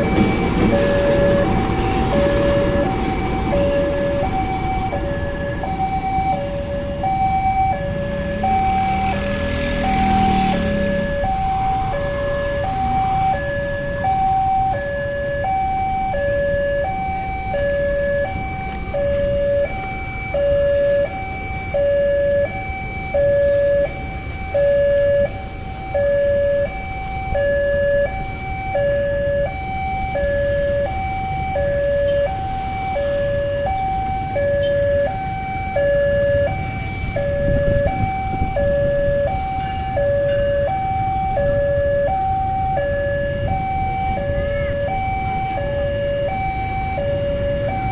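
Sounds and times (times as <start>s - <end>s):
two-tone warning alarm: 0.0s - 47.9s.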